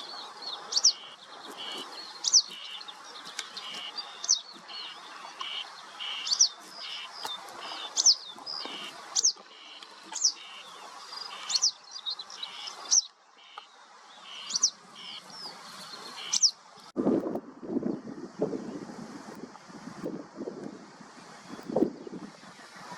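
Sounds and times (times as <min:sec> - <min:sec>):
small bird calling: 0:00.0 - 0:16.6
wind rumble on microphone: 0:17.0 - 0:22.9.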